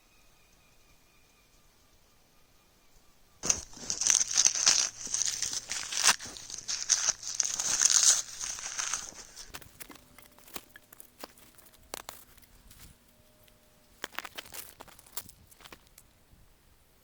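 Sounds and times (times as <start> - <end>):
stiff material crinkling: 3.4 - 13.0, 14.0 - 16.0.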